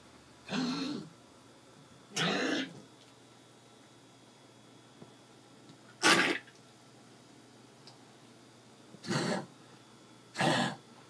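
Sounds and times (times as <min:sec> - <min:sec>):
dog coughing: 0:00.5 - 0:01.1, 0:02.2 - 0:02.8, 0:06.0 - 0:06.5, 0:09.0 - 0:09.5, 0:10.4 - 0:10.8.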